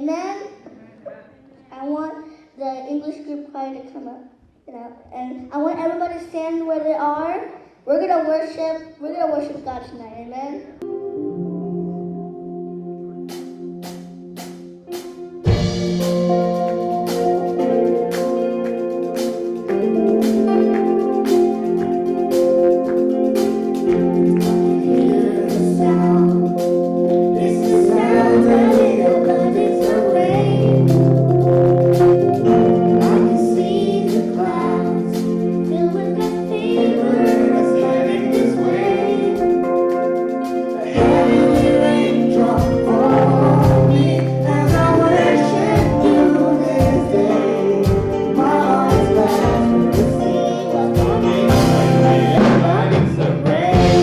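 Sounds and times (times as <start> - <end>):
choir singing worship song: 10.8 - 54.0
keyboard chords: 10.8 - 54.0
drums: 13.3 - 54.0.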